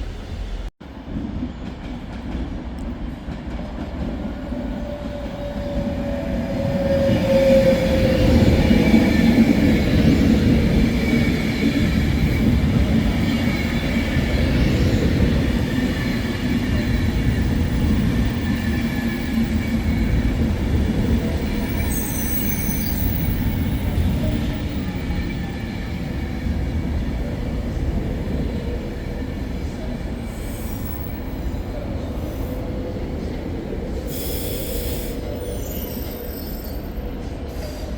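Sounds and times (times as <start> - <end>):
train rumbling on track: 0.0 - 37.9
train wheel squeal: 4.8 - 26.2, 30.2 - 32.7, 34.1 - 37.9.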